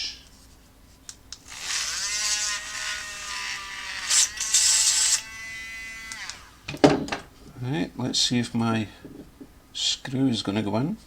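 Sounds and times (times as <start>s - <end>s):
rotary tool whining: 1.3s - 7.4s
drill bit rasping through plastic: 1.4s - 6.8s.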